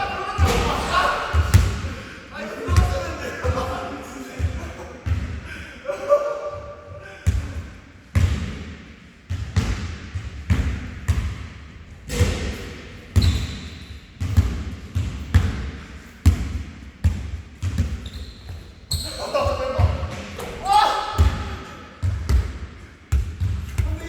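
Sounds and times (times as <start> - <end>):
basketball bouncing on gym floor: 0.4 - 1.9, 7.2 - 20.5, 21.2 - 24.0.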